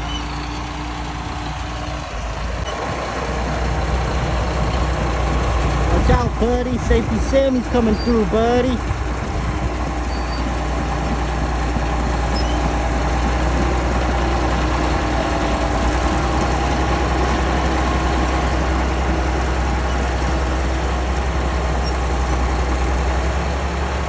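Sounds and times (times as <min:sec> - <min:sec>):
bulldozer engine running: 0:00.0 - 0:24.0.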